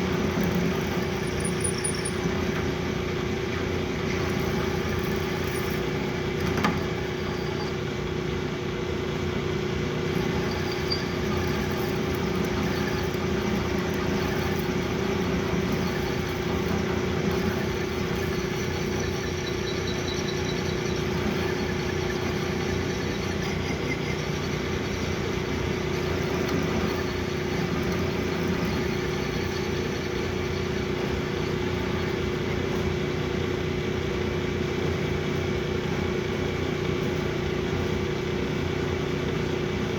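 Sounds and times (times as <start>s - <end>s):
metal lathe humming: 0.0s - 8.4s, 10.1s - 33.0s.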